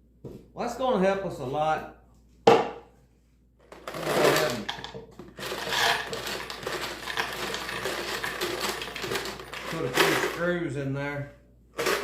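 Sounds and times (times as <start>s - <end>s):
metal screws rattling into wood: 3.9s - 10.2s.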